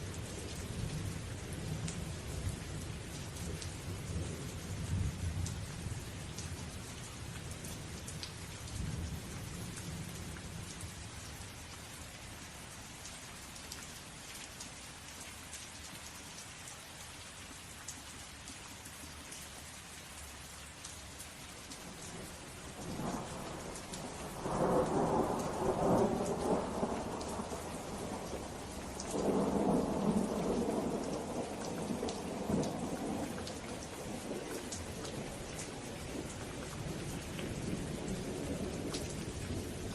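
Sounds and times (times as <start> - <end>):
steady rain falling: 0.0 - 39.9
thunder rumbling: 22.8 - 33.3.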